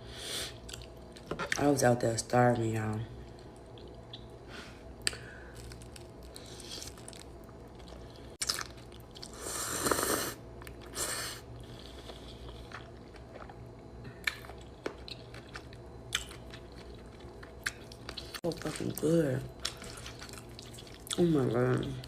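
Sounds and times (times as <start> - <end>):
person chewing: 0.6 - 1.6, 5.0 - 22.0.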